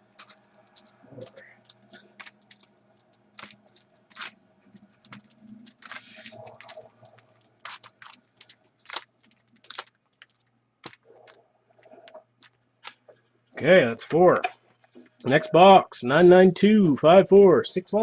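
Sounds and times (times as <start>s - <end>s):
faint steady hum: 0.0s - 18.0s
card packs crinkling and tapping: 0.1s - 13.1s.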